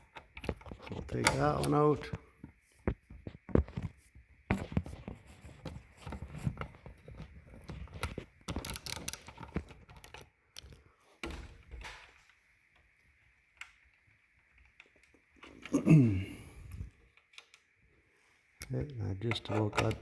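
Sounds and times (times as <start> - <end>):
hand tool tapping and scraping metal: 0.0 - 10.7, 18.9 - 20.0.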